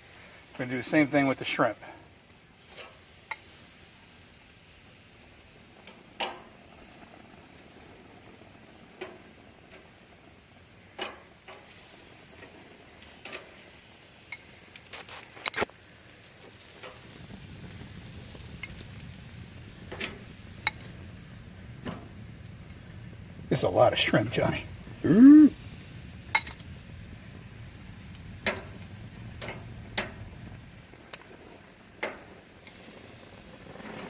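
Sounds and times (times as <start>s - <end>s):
chicken sizzling: 0.0s - 34.0s
utensils clicking at a grill: 2.6s - 3.6s, 5.8s - 6.6s, 9.0s - 10.0s, 11.0s - 17.1s, 18.4s - 19.2s, 19.8s - 21.0s, 21.8s - 22.8s, 26.3s - 26.8s, 28.0s - 30.4s, 31.1s - 34.0s
low steady rumble: 17.1s - 31.2s.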